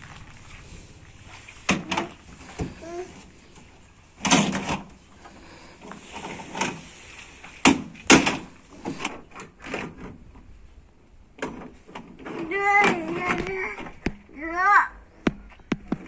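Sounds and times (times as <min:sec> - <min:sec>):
plastic toy vehicles knocking: 0:01.6 - 0:06.9, 0:07.6 - 0:10.2, 0:11.4 - 0:14.3, 0:15.2 - 0:16.0.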